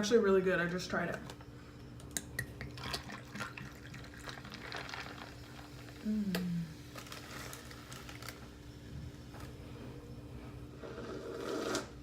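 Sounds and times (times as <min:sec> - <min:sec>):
person humming: 0:06.0 - 0:06.8
food packaging clicks and rustling: 0:06.9 - 0:08.5.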